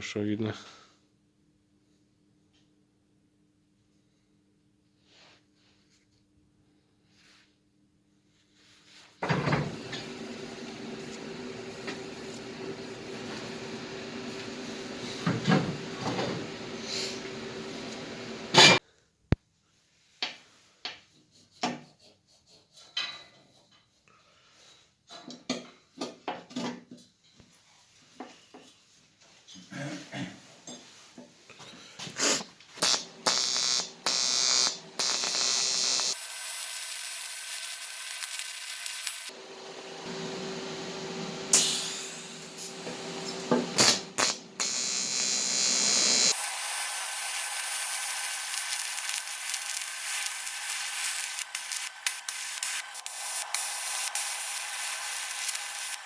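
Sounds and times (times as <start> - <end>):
gas hissing: 9.6 - 18.8, 32.2 - 39.3, 40.0 - 56.0
welding arc buzzing: 9.8 - 18.7, 32.8 - 39.3, 41.2 - 56.0.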